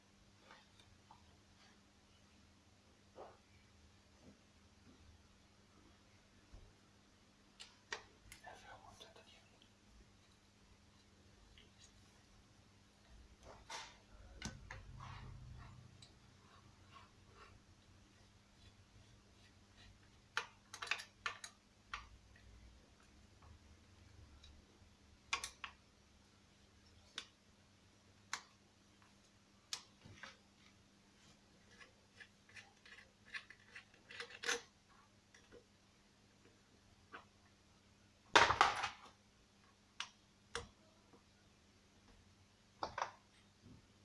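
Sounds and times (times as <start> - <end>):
small tools clicking and clinking: 31.7 - 34.7.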